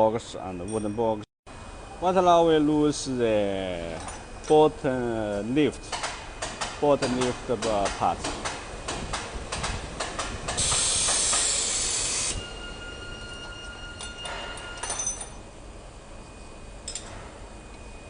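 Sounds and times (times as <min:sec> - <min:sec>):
hiss of escaping air: 0:10.5 - 0:12.5
faint high whine: 0:11.6 - 0:18.0.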